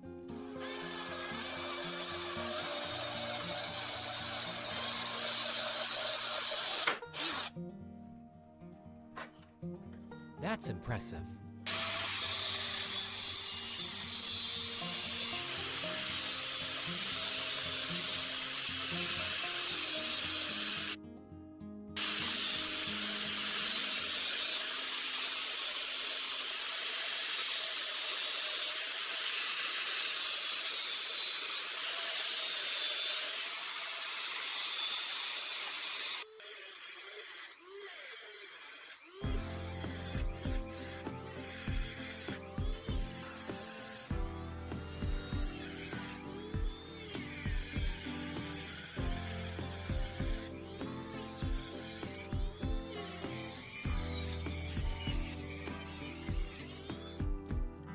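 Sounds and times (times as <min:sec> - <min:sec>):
background music: 0:07.1 - 0:24.2, 0:39.2 - 0:57.9.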